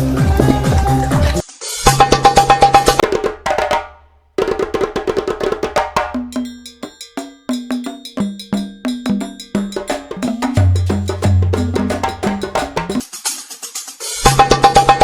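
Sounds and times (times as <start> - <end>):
percussive music beat: 0.0 - 15.0.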